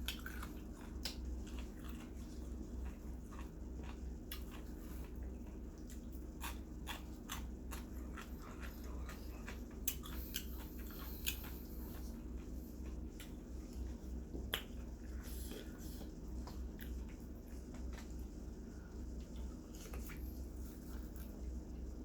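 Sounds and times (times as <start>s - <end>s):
chewing with wet mouth clicks: 0.0s - 18.4s, 19.1s - 21.5s
low steady hum: 0.0s - 22.0s.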